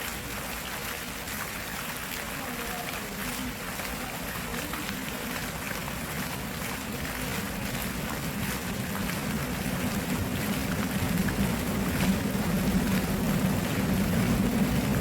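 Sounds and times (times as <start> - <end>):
stream flowing: 0.0 - 15.0.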